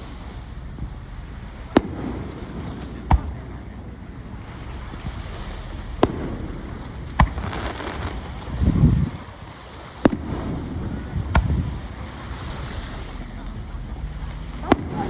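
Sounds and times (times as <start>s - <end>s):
deep rumbling boom: 0.0s - 9.4s, 10.0s - 15.0s
fireworks shells bursting: 0.7s - 8.7s.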